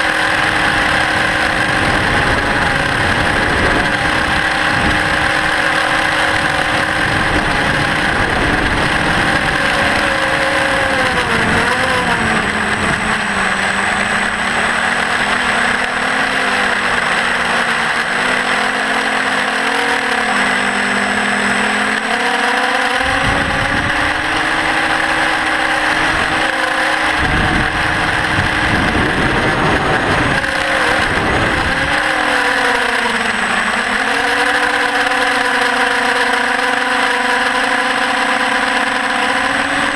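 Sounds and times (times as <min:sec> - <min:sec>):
wind rumble on microphone: 0:00.0 - 0:17.5, 0:23.0 - 0:35.6
quadcopter motors and propellers whining: 0:00.0 - 0:39.9.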